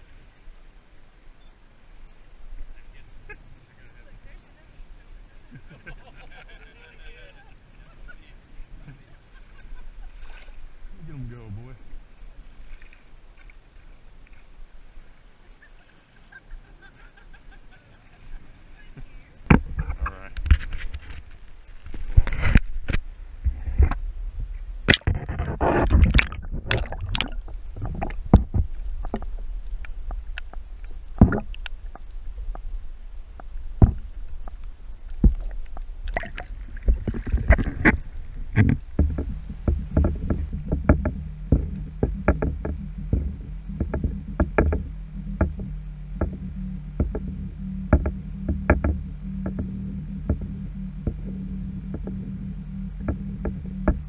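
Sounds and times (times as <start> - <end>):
paddle splashes: 9.4 - 11.1, 24.9 - 54.0
wind rumble on microphone: 18.4 - 54.0
steady low hum: 18.8 - 54.0
paddle knocking plastic hull: 19.5 - 20.6, 24.9 - 32.7, 33.4 - 34.6, 35.2 - 54.0.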